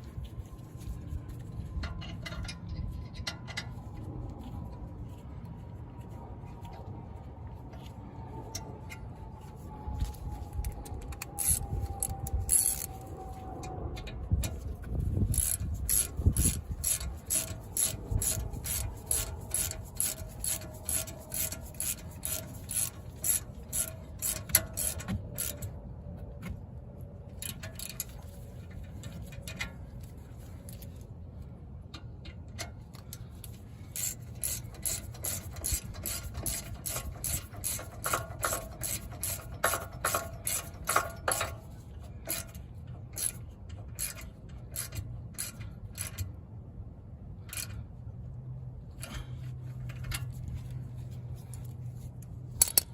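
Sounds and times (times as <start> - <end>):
ratchet wrench clicking: 10.6 - 13.0, 14.4 - 25.8, 27.4 - 29.8, 32.6 - 46.4, 47.4 - 47.8, 51.5 - 52.9.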